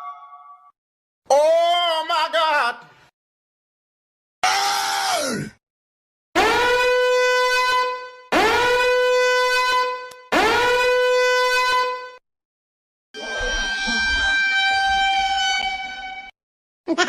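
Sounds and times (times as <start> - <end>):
buzzy horn blast: 6.4 - 12.2, 13.2 - 16.3.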